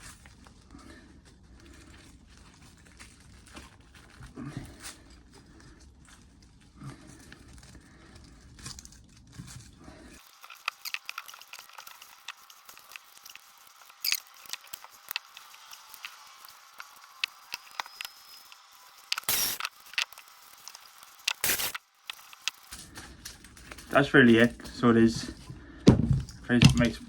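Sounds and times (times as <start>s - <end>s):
screwdriver scraping and clicking: 10.2s - 24.0s.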